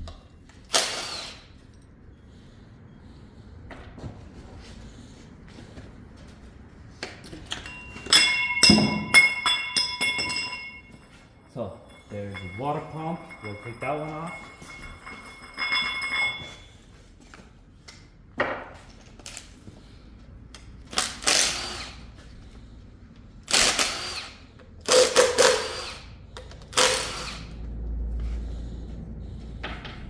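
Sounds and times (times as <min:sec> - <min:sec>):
power tool motor bursts: 0:00.7 - 0:01.5, 0:20.9 - 0:22.0, 0:23.5 - 0:27.5.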